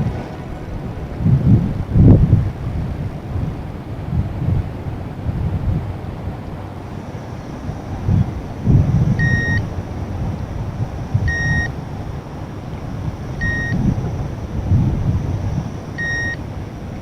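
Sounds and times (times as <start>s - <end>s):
wind buffeting microphone: 0.0s - 17.0s
bite alarm beeps: 9.2s - 9.7s, 11.2s - 11.8s, 13.4s - 13.8s, 16.0s - 16.4s.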